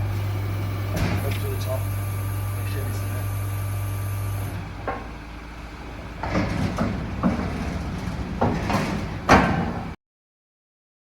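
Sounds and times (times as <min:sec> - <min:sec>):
metal clunks and rattles: 0:00.8 - 0:01.5, 0:04.6 - 0:05.2, 0:05.8 - 0:10.0.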